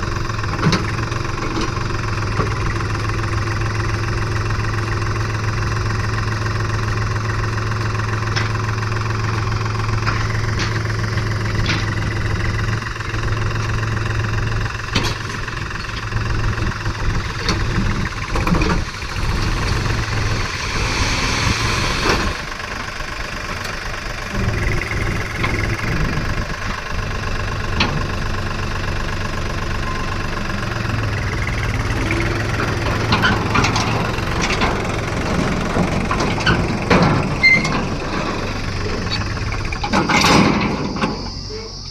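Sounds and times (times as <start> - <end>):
diesel engine running: 0.0 - 41.9
hissing rush: 18.8 - 23.7
metallic knocks and clanks: 39.0 - 41.2.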